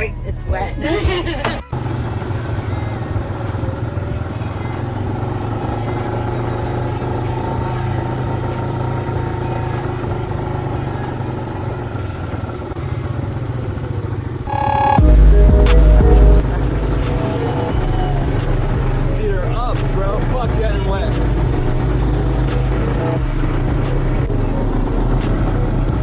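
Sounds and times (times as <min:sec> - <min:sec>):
road and wind noise: 0:00.0 - 0:14.5, 0:16.4 - 0:26.0
quad bike engine running: 0:00.0 - 0:26.0.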